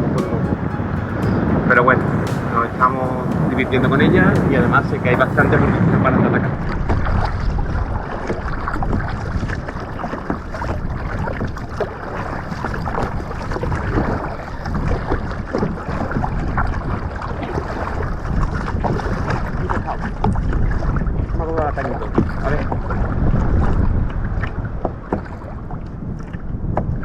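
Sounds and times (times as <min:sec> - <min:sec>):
wind buffeting microphone: 0:00.0 - 0:27.0
water lapping against a hull: 0:06.2 - 0:27.0.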